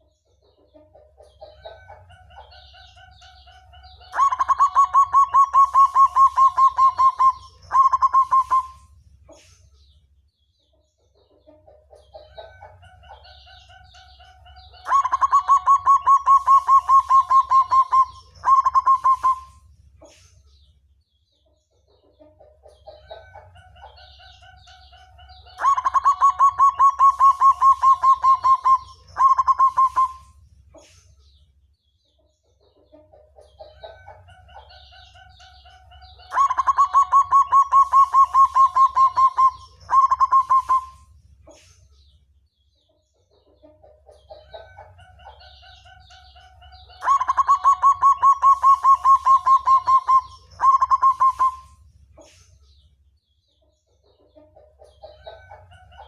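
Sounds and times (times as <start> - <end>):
dove cooing song: 1.2 - 9.0, 12.0 - 20.2, 22.8 - 30.4, 33.5 - 41.6, 44.1 - 52.4.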